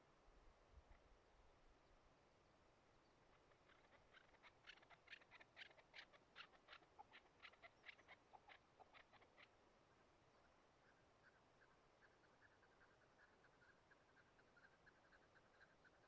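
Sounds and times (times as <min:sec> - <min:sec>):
faint bird calls: 0:03.0 - 0:09.6, 0:10.3 - 0:16.0.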